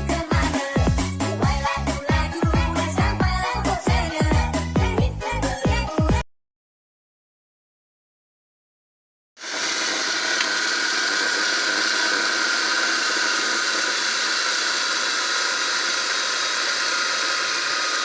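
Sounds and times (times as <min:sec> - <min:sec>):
crushing machine whirring: 0:09.4 - 0:18.0.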